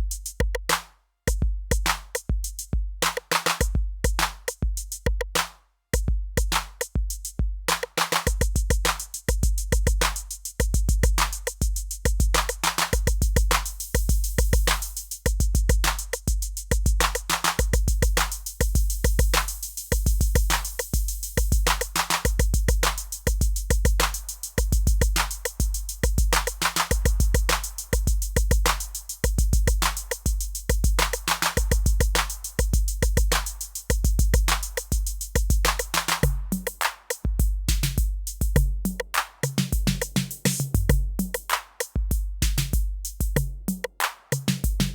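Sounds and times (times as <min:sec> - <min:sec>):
fast hi-hats: 0:00.0 - 0:44.9.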